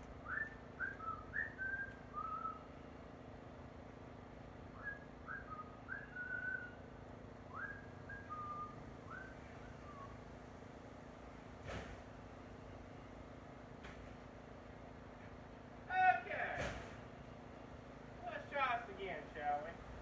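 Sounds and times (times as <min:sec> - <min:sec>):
faint steady hum: 0:00.0 - 0:20.0
person whistling a tune: 0:00.2 - 0:02.7, 0:04.8 - 0:06.7, 0:07.5 - 0:09.3.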